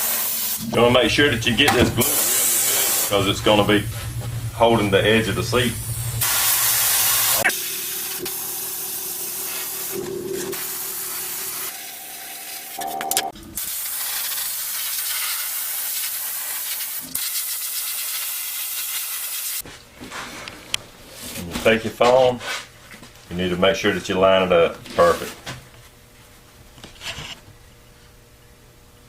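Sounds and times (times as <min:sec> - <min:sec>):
spray adhesive hissing: 0:00.0 - 0:00.6, 0:02.0 - 0:03.1, 0:05.8 - 0:11.8, 0:13.6 - 0:19.6.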